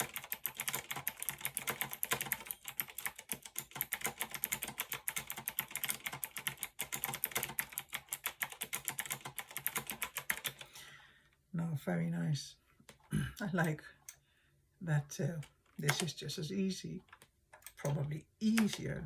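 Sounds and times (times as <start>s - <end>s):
mechanical keyboard typing: 0.0s - 10.7s, 15.4s - 16.2s, 17.0s - 19.0s.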